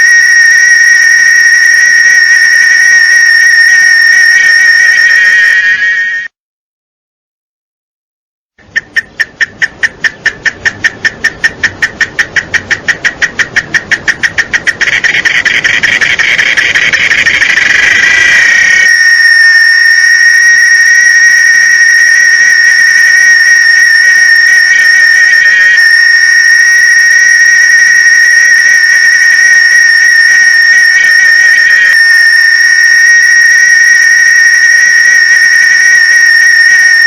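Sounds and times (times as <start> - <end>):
cicada buzzing: 9.0 - 37.0.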